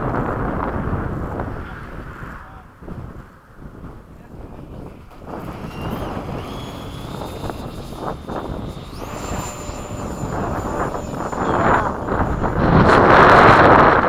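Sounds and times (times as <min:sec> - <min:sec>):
wind on microphone: 0:00.0 - 0:14.0
ducted fan jet whine: 0:03.7 - 0:14.0.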